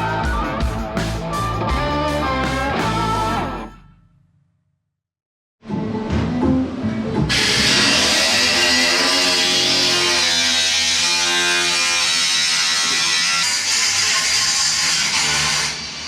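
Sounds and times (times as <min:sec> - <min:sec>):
distorted electric guitar music: 0:00.0 - 0:03.8.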